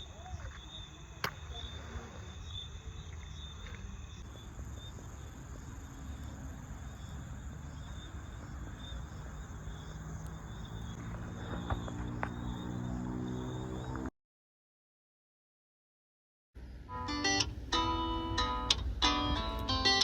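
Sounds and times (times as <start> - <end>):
crickets chirping: 0.0 - 14.1.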